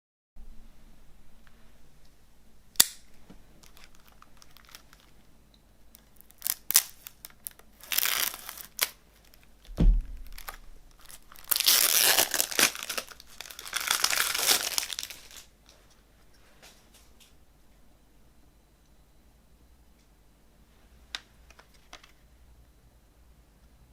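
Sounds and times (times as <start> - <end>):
plastic packaging crinkling: 3.6 - 5.3, 5.9 - 15.5
dull thump: 9.7 - 10.8.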